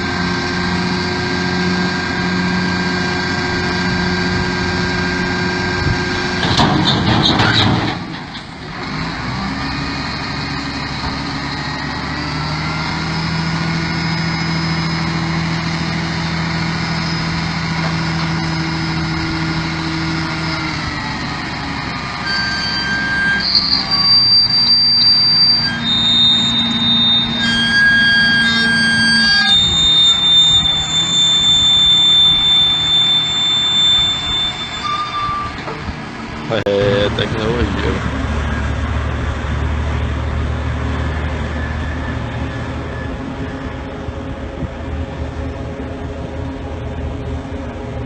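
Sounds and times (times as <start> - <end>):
diesel engine running: 0.0 - 48.0
short high beeps: 25.0 - 35.6.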